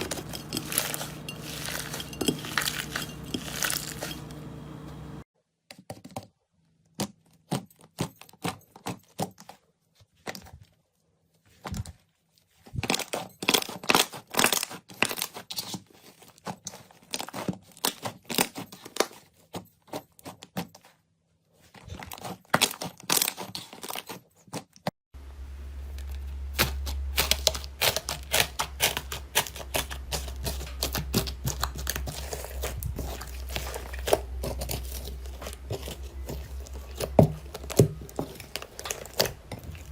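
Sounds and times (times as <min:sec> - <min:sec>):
low hum: 0:00.0 - 0:05.2
sticky slime crackling: 0:26.0 - 0:39.9.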